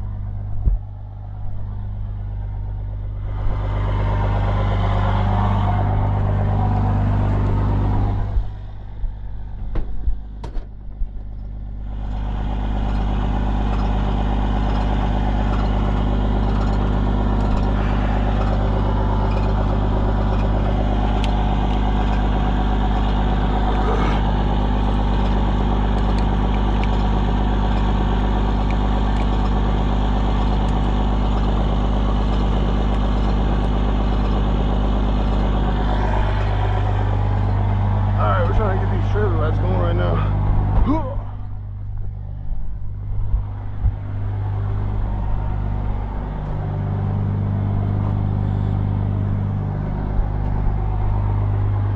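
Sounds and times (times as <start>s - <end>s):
vehicle engine idling: 0.0s - 51.9s.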